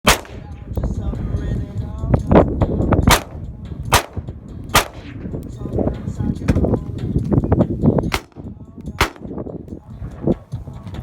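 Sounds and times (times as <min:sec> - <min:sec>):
rifle gunshots: 0:00.1 - 0:00.6, 0:03.1 - 0:05.2, 0:08.1 - 0:09.3.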